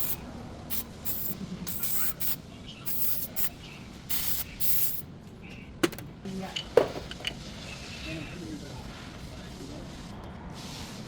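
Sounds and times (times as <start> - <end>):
aerosol spray hissing: 0.0 - 3.5, 4.1 - 5.0.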